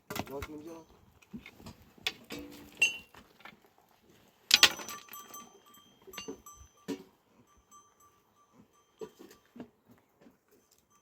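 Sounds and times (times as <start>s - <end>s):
faint ringing tone: 4.6s - 9.9s, 10.5s - 11.0s.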